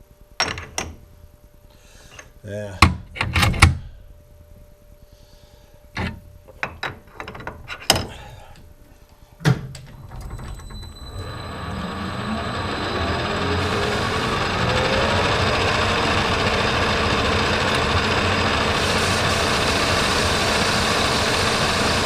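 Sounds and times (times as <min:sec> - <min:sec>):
metal clanks and knocks: 0:06.0 - 0:08.2
metal lathe running: 0:10.7 - 0:22.0.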